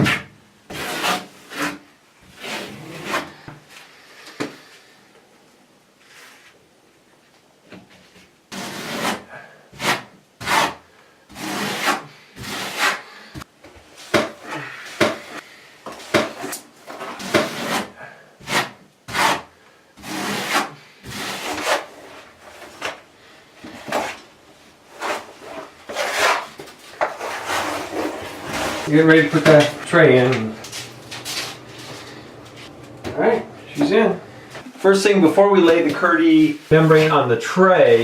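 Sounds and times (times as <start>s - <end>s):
steel trowel scraping: 0.7s - 3.4s, 24.9s - 32.2s.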